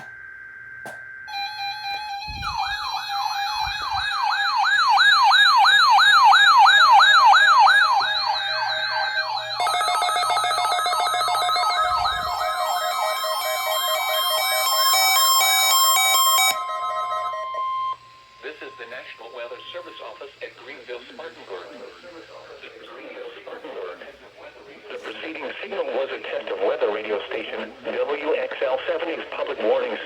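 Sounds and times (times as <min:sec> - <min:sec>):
warbling siren: 0:00.0 - 0:20.4
pulsed beeping alarms: 0:00.0 - 0:22.8
steady alarm tone: 0:00.0 - 0:23.7.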